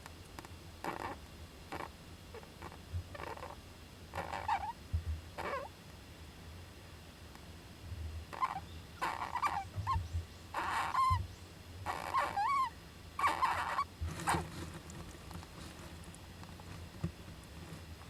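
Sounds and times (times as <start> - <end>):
flying squirrel calling: 0.8 - 4.8, 5.4 - 5.7, 8.3 - 14.4.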